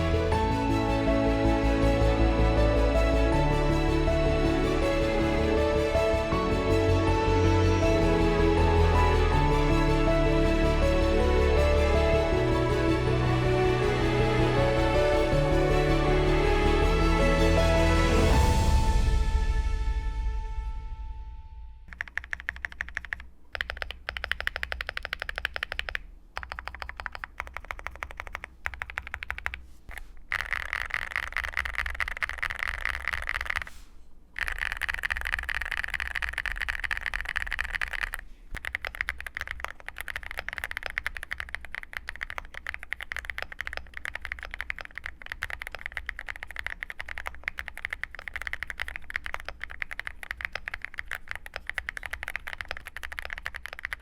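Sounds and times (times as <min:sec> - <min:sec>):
fast mechanical keyboard typing: 0:21.9 - 0:33.8, 0:34.4 - 0:54.0.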